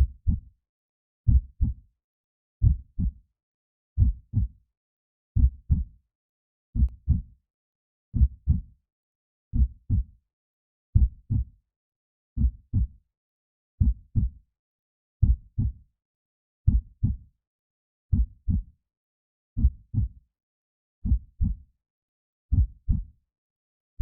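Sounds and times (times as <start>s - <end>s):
heartbeat thumps: 4.0s - 4.5s, 16.7s - 17.2s.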